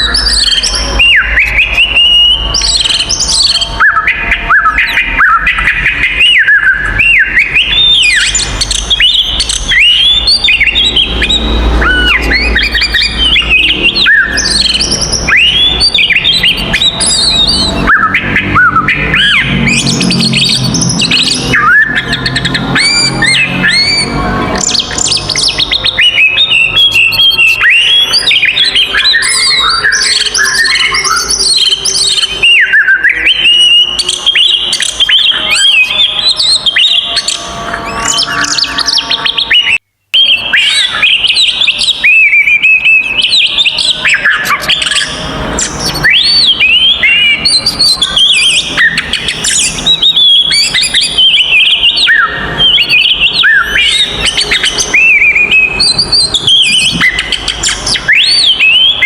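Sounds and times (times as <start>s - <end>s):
bird singing varied whistles: 0.0s - 59.0s.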